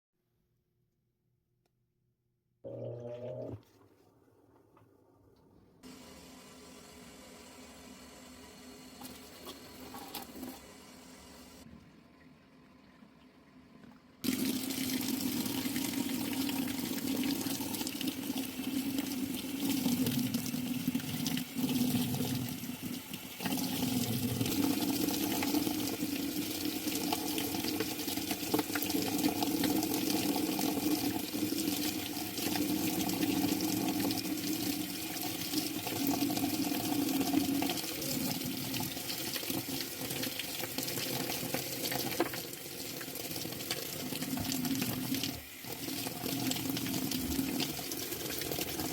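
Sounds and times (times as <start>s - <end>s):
water running: 5.8s - 48.9s.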